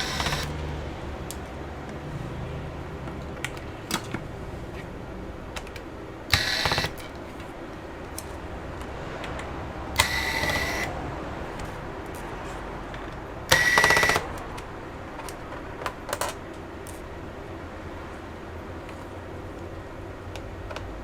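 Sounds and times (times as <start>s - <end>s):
electric screwdriver motor whining: 0.0s - 0.6s, 6.3s - 7.0s, 10.0s - 10.9s, 13.5s - 14.3s.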